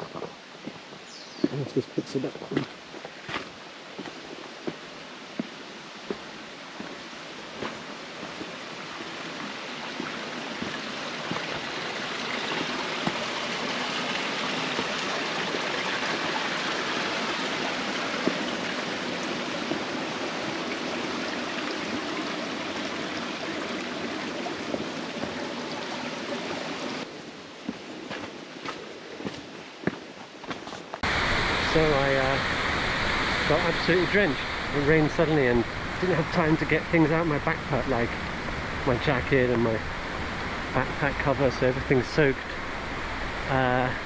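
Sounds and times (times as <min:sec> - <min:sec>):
rushing water: 0:00.0 - 0:29.8, 0:31.0 - 0:44.0.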